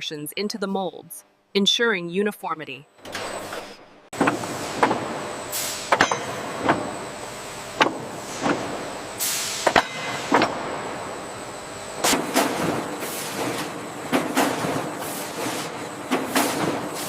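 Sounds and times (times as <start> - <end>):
production line machinery running: 3.0 - 17.0
sharp metallic clanks: 5.8 - 6.8
compressed air hisses: 9.2 - 9.7.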